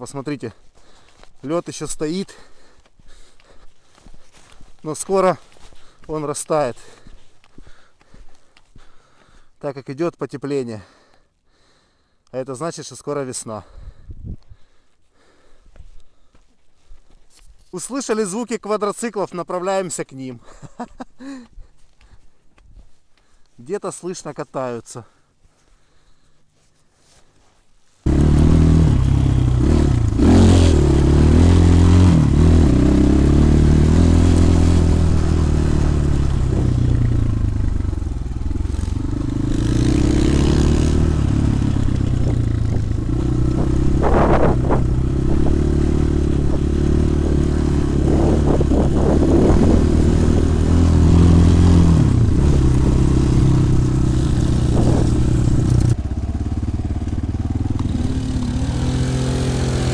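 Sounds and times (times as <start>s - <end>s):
motorcycle engine revving: 28.0s - 59.9s.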